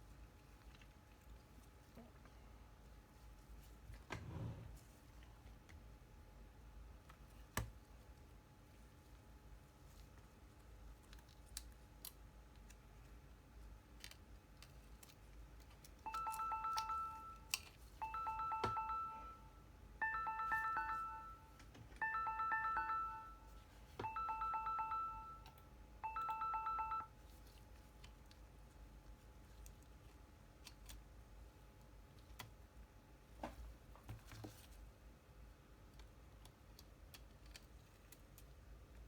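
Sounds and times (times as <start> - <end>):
electronic ringtone: 16.1 - 27.1.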